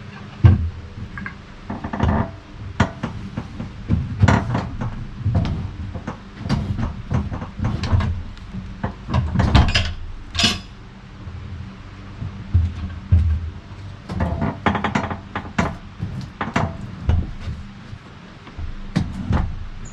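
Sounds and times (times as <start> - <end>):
log scraping: 0.1 - 19.8
log knocks and clunks: 12.5 - 19.8.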